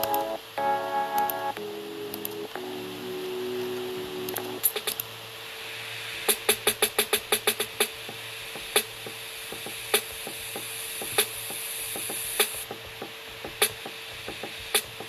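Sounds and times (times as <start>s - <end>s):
steady hum: 0.0s - 6.8s
crackling hiss: 0.0s - 15.0s
electronic hi-hat clicks: 3.9s - 5.2s, 6.0s - 15.0s.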